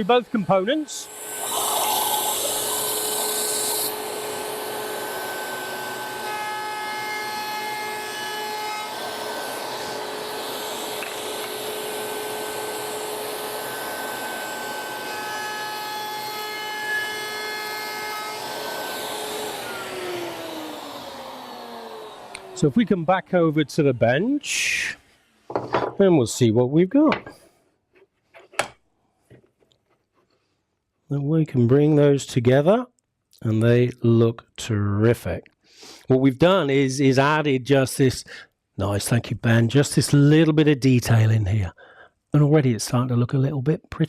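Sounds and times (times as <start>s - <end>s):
router cutting through wood: 0.0s - 23.5s
router whining: 0.8s - 23.5s
motor spinning down: 1.0s - 6.3s, 17.0s - 23.0s
dust extraction: 18.4s - 23.6s.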